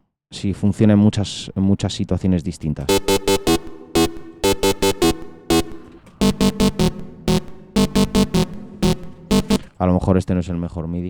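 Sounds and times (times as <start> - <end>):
distorted synth stabs: 2.9 - 9.7.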